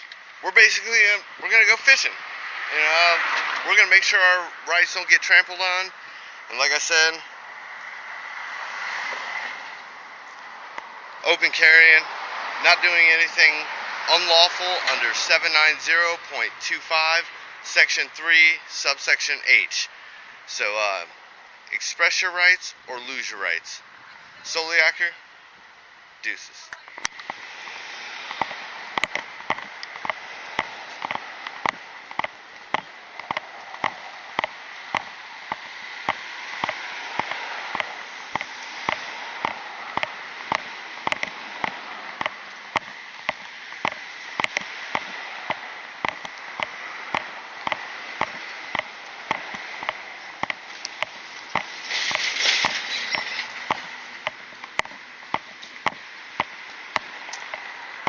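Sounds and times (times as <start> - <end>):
rushing noise: 27.3 - 58.0
footsteps on hard surface: 28.2 - 57.7.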